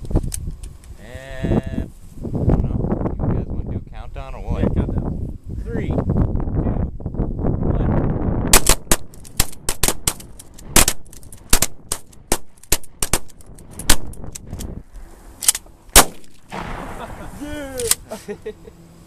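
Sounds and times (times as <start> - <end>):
shotgun shots: 8.5 - 13.3, 15.9 - 17.3.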